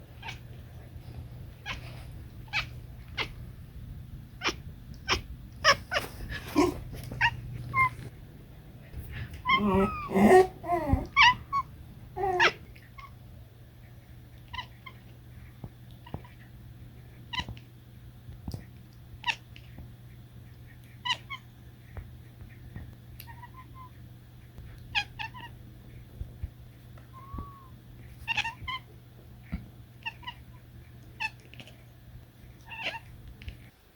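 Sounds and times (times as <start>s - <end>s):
cat chirping and chattering: 0.1s - 0.8s, 1.5s - 3.4s, 4.3s - 8.1s, 9.1s - 13.2s, 24.7s - 25.6s, 27.2s - 28.9s, 30.0s - 31.8s, 32.6s - 33.7s.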